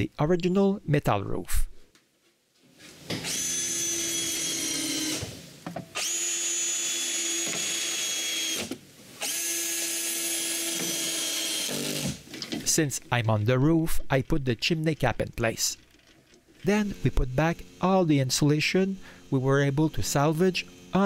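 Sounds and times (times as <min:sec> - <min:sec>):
power drill whining: 0:03.2 - 0:12.3.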